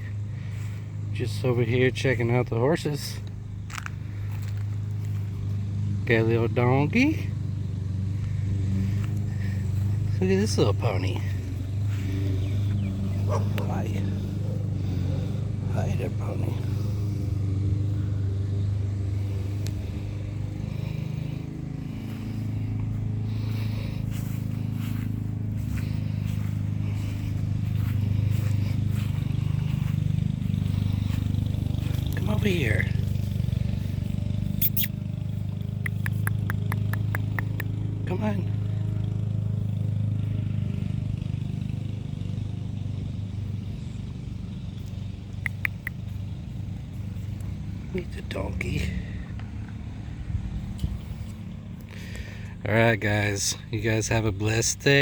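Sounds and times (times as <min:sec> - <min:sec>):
engine idling: 0:00.0 - 0:55.0
short sharp clicks: 0:34.5 - 0:35.0, 0:35.8 - 0:37.7, 0:45.4 - 0:46.0.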